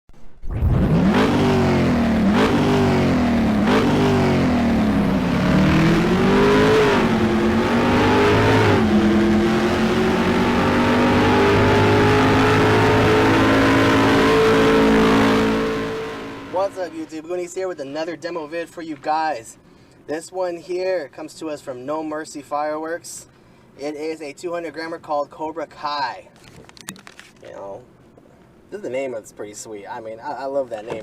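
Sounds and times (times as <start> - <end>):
car engine revving: 0.4 - 17.1.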